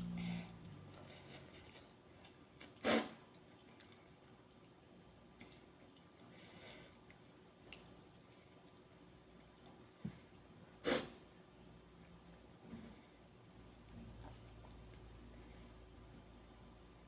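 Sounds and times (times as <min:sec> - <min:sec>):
person sniffling: 0:10.8 - 0:11.2.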